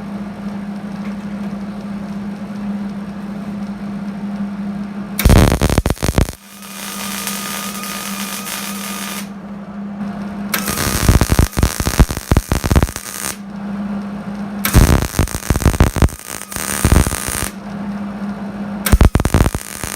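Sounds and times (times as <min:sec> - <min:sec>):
steady low hum: 0:00.0 - 0:19.9
welding arc crackling and hissing: 0:05.2 - 0:09.3, 0:10.6 - 0:13.4, 0:14.6 - 0:17.6, 0:18.9 - 0:19.9.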